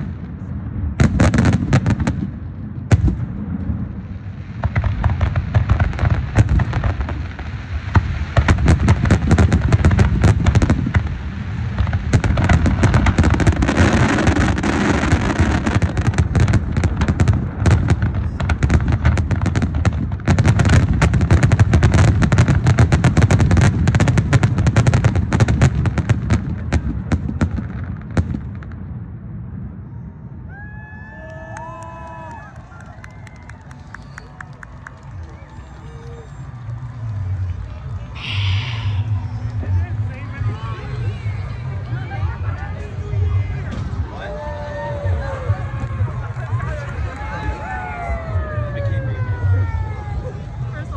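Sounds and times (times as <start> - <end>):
fireworks bangs and crackles: 0.0 - 50.9
heavy low rumble: 32.6 - 50.9.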